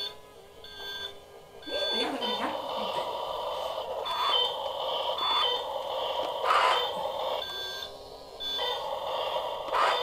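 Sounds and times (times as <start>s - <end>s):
buzzy toy machine sound: 0.0s - 10.0s
high electronic beeps: 0.7s - 2.4s, 4.0s - 8.9s.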